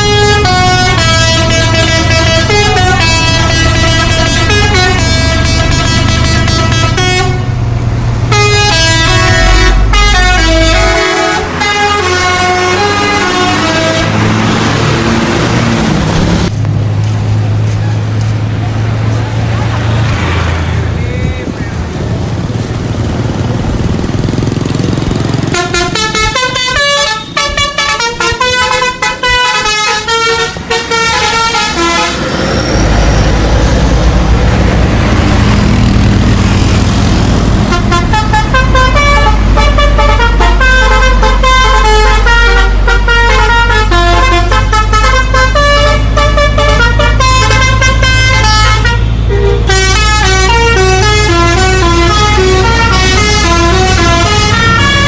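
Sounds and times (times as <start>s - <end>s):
bus musical horn playing a tune: 0.0s - 16.4s, 25.2s - 34.3s, 36.5s - 55.0s
bus engine humming: 0.0s - 55.0s.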